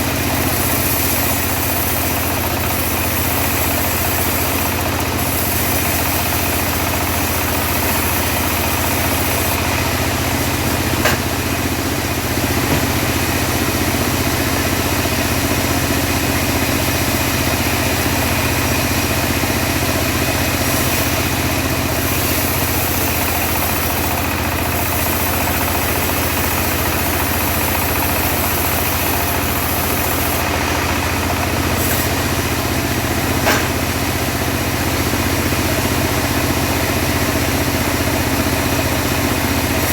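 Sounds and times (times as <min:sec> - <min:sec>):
saw blade ripping wood: 0:00.0 - 0:09.7, 0:20.3 - 0:32.5
bandsaw mill engine running: 0:00.0 - 0:39.9.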